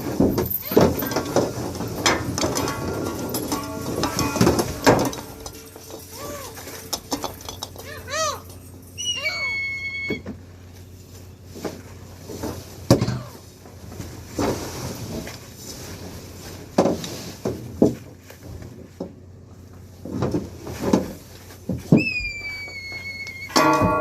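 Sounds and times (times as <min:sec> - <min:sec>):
knocks and wooden clunks: 0:00.0 - 0:07.8
low boat engine hum: 0:00.0 - 0:23.6.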